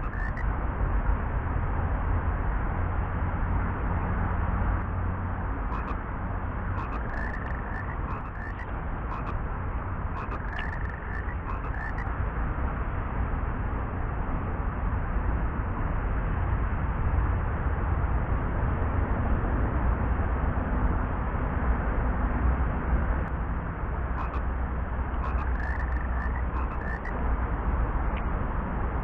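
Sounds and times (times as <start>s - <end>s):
frogs croaking: 0.0s - 0.5s, 5.6s - 12.2s, 24.0s - 27.2s
steady rushing noise: 0.0s - 0.5s, 4.8s - 12.1s, 23.4s - 28.8s.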